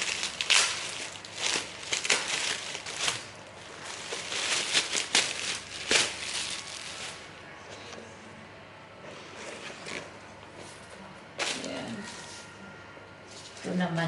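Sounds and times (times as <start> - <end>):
packaging crinkling and rustling: 0.0 - 7.3.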